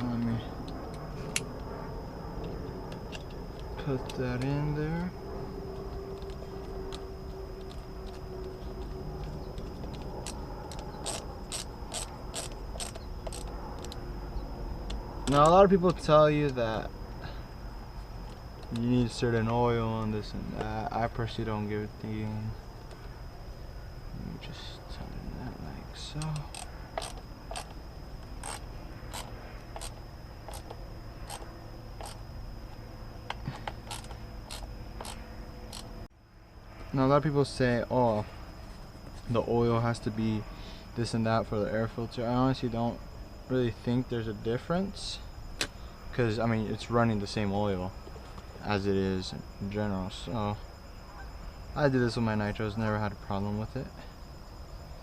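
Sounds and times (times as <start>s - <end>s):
cricket chirping: 0.0s - 55.0s
steady low hum: 0.0s - 55.0s
small parts clicking and snapping: 7.6s - 14.0s, 26.1s - 32.2s, 33.3s - 35.9s.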